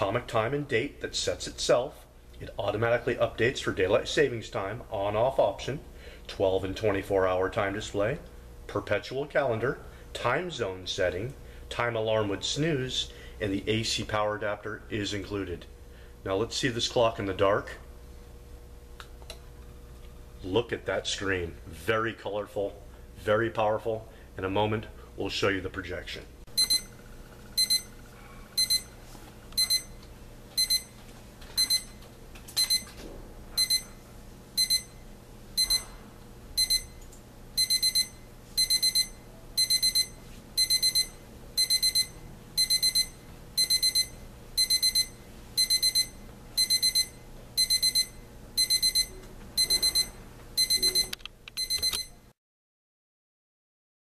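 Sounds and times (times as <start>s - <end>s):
alarm clock beeping: 26.6s - 26.9s, 27.6s - 28.0s, 28.6s - 29.0s, 29.6s - 30.0s, 30.6s - 31.0s, 31.6s - 32.0s, 32.6s - 32.9s, 33.6s - 33.9s, 34.6s - 35.0s, 35.6s - 36.0s, 36.6s - 37.0s, 37.6s - 52.2s.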